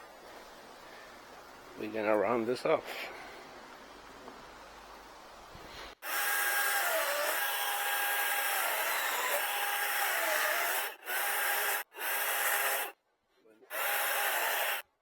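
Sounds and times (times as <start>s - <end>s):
electric chainsaw whining: 6.0s - 13.0s, 13.7s - 14.8s.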